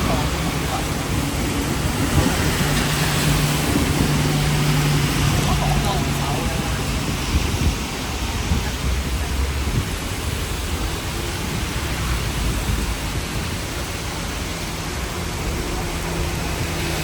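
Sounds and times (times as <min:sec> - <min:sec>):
rain hiss: 0:00.0 - 0:17.0
tram rumbling: 0:00.0 - 0:17.0.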